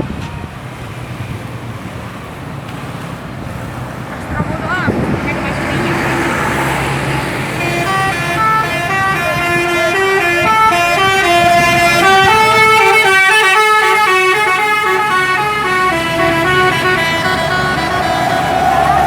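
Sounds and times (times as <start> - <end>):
musical air horn tune: 7.6 - 19.0.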